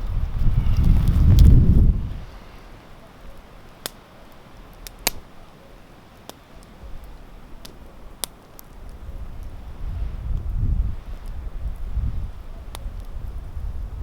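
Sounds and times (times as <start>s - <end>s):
low wind rumble: 0.0s - 5.3s, 6.8s - 14.0s
campfire crackling and popping: 0.0s - 14.0s.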